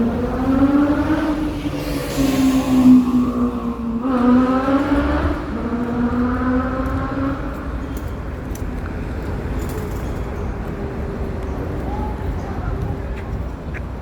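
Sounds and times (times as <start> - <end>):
vehicle engine passing by: 0.0 - 8.2
low traffic rumble: 0.0 - 14.0.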